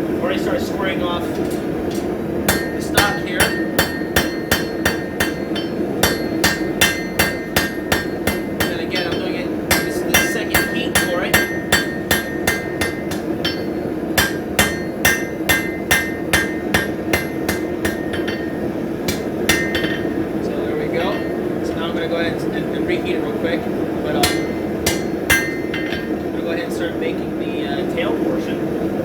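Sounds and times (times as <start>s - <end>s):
steady hum: 0.0s - 29.0s
hammer ringing on anvil: 2.5s - 21.5s, 24.2s - 26.3s.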